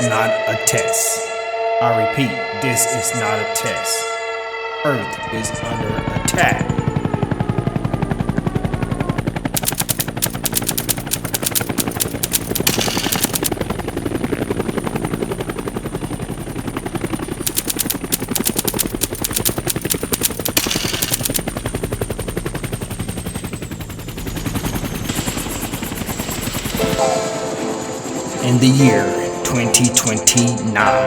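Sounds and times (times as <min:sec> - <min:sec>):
rapid automatic gunfire: 0:09.6 - 0:13.5, 0:17.4 - 0:21.4.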